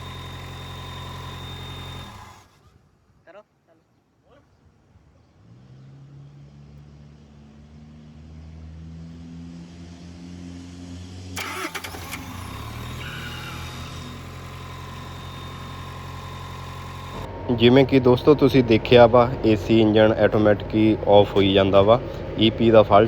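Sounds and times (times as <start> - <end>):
diesel engine starting and running: 0.0 - 2.6, 5.4 - 23.0
steady whine: 11.4 - 23.0.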